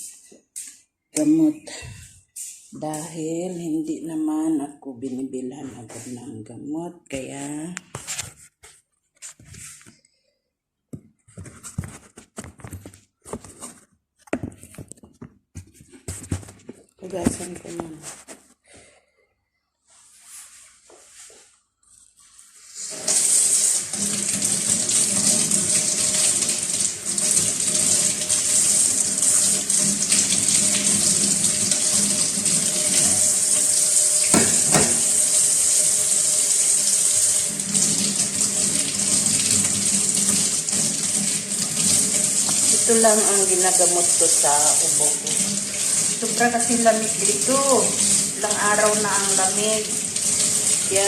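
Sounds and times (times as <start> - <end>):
tap water running into sink: 22.8 - 51.0.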